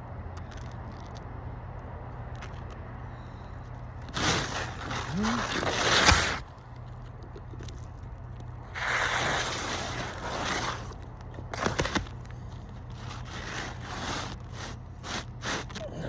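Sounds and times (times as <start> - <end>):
tool scraping on roof shingles: 4.0 - 6.6, 8.6 - 15.8.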